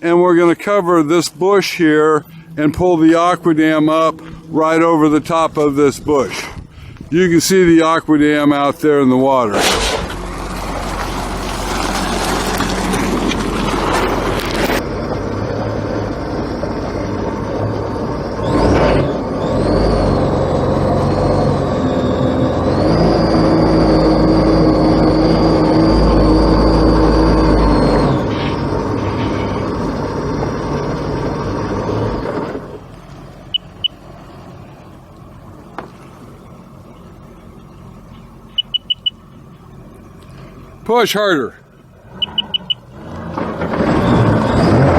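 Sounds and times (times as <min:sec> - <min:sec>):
large engine humming: 0:00.0 - 0:44.9
high-pitched beeps: 0:38.5 - 0:39.2, 0:42.2 - 0:42.8.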